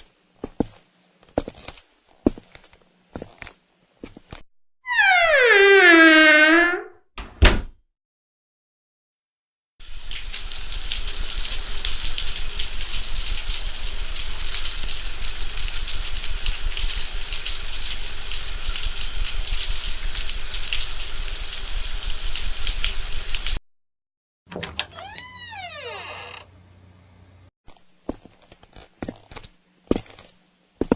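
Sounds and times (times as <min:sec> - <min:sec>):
water running and splashing: 0:09.8 - 0:23.6.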